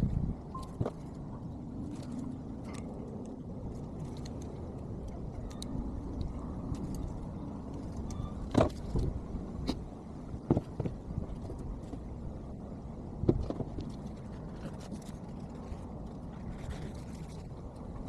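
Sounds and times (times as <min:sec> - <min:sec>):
steady low rumble: 0:00.0 - 0:18.0.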